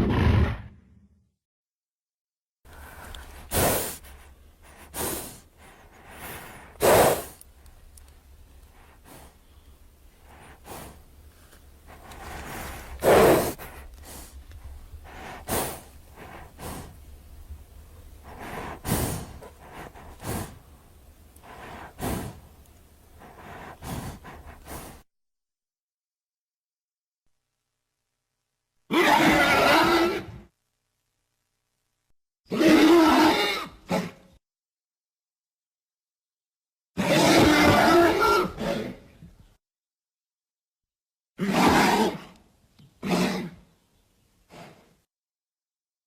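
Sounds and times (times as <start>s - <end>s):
creature breaths and snorts: 2.7s - 7.5s, 8.7s - 9.4s, 10.2s - 11.1s, 11.8s - 17.1s, 18.1s - 20.8s, 21.4s - 25.1s, 44.5s - 45.1s.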